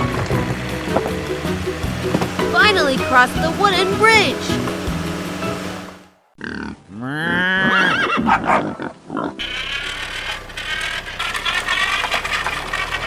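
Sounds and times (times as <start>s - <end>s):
horse whinnying: 6.4s - 9.4s.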